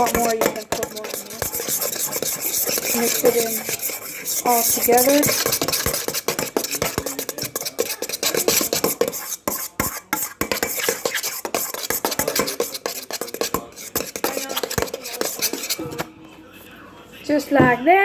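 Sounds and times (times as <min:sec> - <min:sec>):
spoon stirring thick wet mix: 0:00.0 - 0:17.9.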